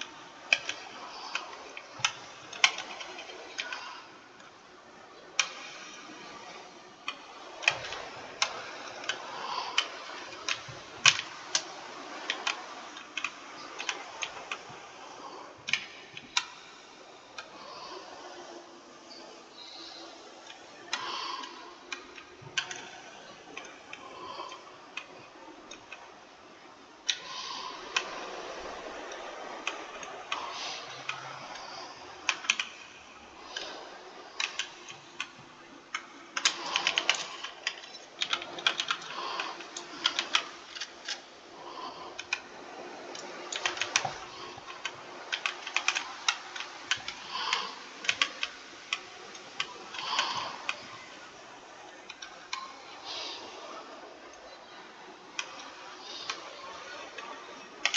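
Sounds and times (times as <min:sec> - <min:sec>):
keyboard key clicks: 0:15.7 - 0:16.6.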